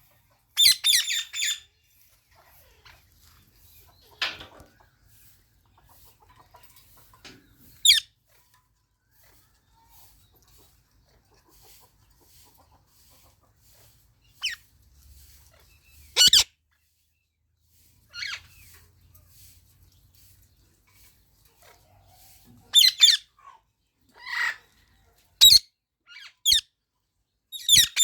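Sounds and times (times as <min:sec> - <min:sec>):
parakeets screeching: 0:00.6 - 0:01.7, 0:16.2 - 0:16.5, 0:22.8 - 0:23.2, 0:25.4 - 0:26.6, 0:27.6 - 0:28.0.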